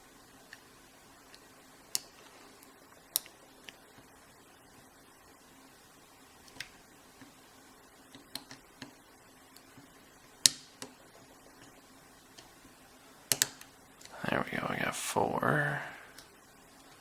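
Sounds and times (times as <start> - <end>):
lock pick metal clicks: 13.3 - 13.7.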